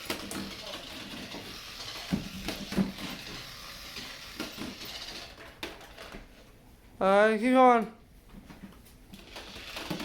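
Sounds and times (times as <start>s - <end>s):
toy robot whirring: 0.0s - 6.2s, 9.2s - 10.0s.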